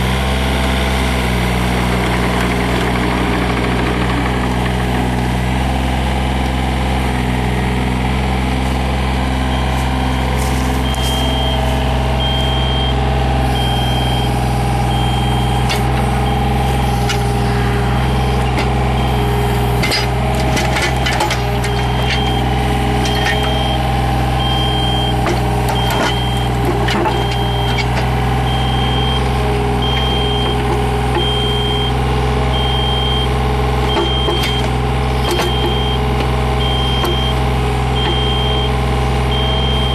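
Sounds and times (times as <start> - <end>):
diesel engine running: 0.0 - 39.9
high alarm beeping: 9.5 - 13.0, 38.0 - 39.9.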